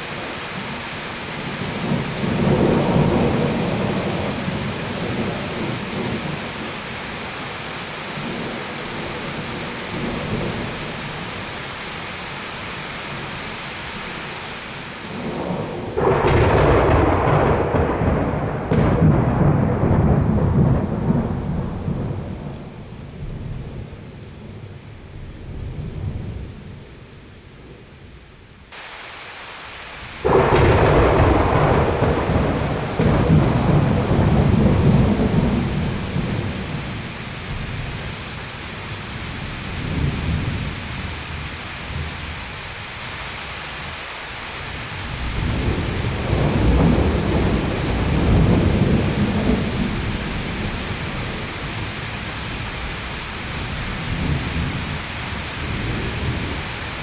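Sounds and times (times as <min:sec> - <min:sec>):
heavy rain: 0:00.0 - 0:57.0
thunderclap rumbling: 0:01.5 - 0:06.7, 0:15.0 - 0:26.8, 0:30.0 - 0:42.4, 0:44.9 - 0:57.0.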